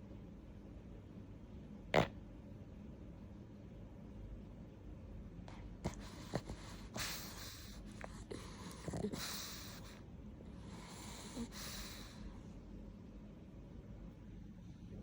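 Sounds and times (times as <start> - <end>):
dog snoring wheezy breaths: 5.5 - 12.6.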